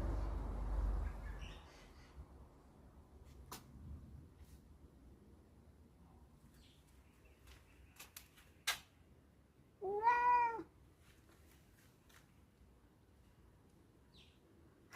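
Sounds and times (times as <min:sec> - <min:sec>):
cat meowing: 0:09.8 - 0:10.7.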